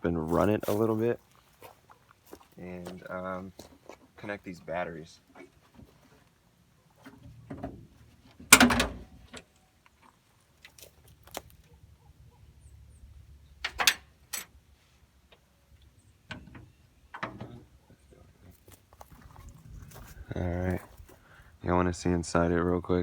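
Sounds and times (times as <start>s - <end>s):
metal hardware clunks and rattles: 7.0s - 9.5s, 13.6s - 14.6s, 16.3s - 17.7s.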